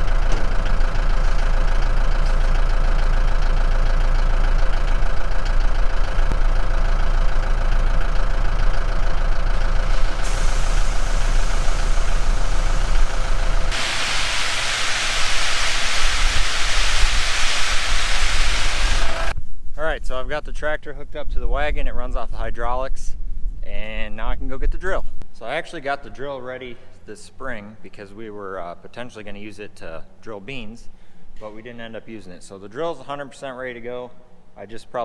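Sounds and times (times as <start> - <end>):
tractor engine rumbling: 0.0 - 19.4
loud steady hiss: 9.9 - 19.4.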